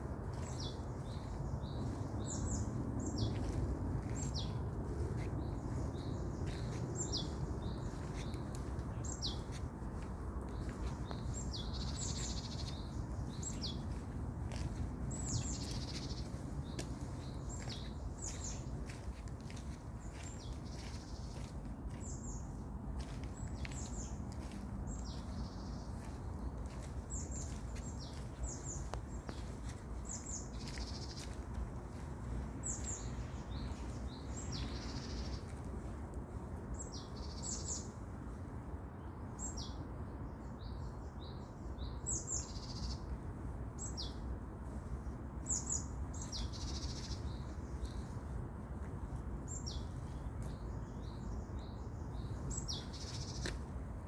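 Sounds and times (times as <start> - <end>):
birds chirping: 0.0 - 35.6.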